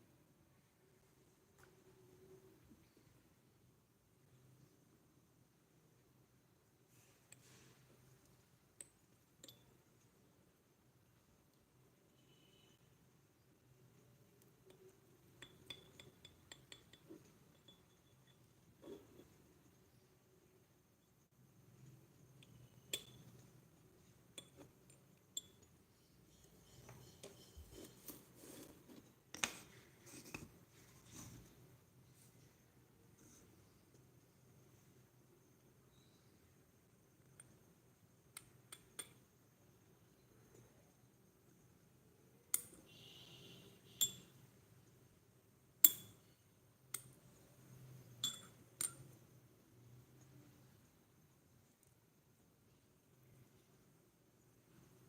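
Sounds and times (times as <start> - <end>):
soft handling sounds: 6.8 - 8.5, 26.4 - 34.2
miniature utensils tapping and clinking: 8.8 - 9.8, 14.4 - 19.4, 22.4 - 23.5, 45.8 - 46.2, 48.2 - 49.2.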